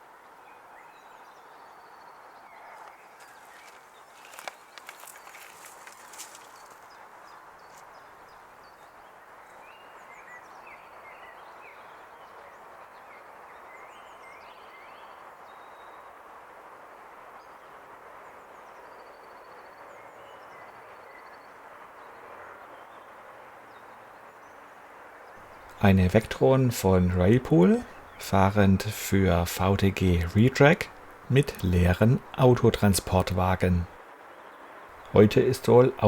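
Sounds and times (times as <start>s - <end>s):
faint outdoor hiss: 0.0s - 36.0s
birds chirping and trilling: 3.2s - 6.9s.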